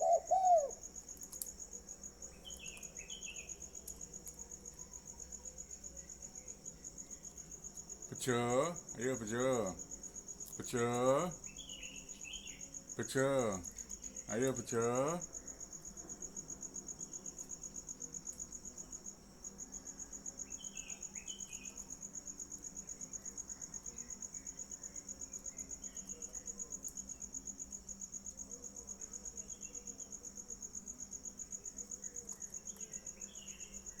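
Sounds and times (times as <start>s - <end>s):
faint bird chirps: 0.0s - 1.7s, 2.3s - 7.2s, 10.5s - 15.6s, 20.4s - 21.9s, 31.6s - 34.0s
cricket trilling: 0.0s - 34.0s.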